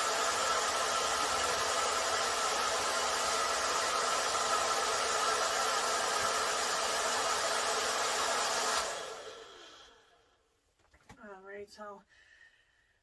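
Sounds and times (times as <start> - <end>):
hair dryer blowing: 0.0 - 10.2.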